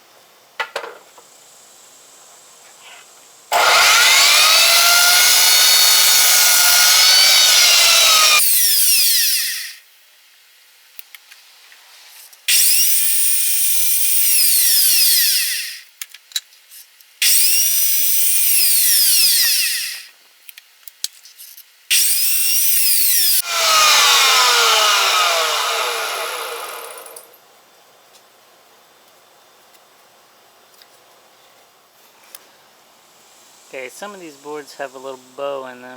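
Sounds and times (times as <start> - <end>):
power saw cutting wood: 3.5 - 9.8, 12.5 - 15.8, 17.2 - 20.1, 21.9 - 27.3
saw motor spinning down: 3.5 - 9.8, 12.5 - 15.8, 17.2 - 20.1, 21.9 - 27.4.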